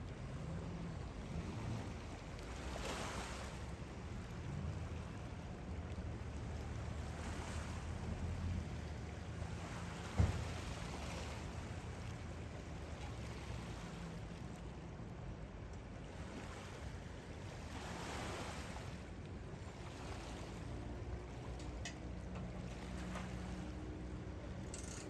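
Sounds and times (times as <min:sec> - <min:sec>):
rushing water: 0:00.0 - 0:15.2
wind: 0:00.0 - 0:25.0
low motor hum: 0:03.6 - 0:25.0.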